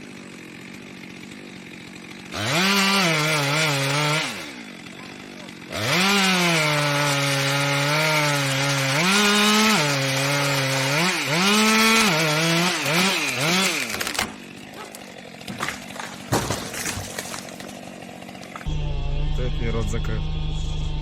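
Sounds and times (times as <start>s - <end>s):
chainsaw cutting: 0.0s - 18.8s
sharp cracks: 13.6s - 18.5s.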